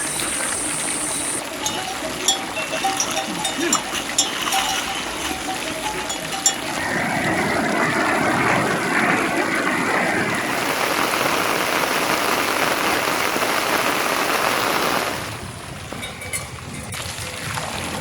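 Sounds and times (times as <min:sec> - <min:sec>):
heavy rainfall: 0:10.2 - 0:15.6.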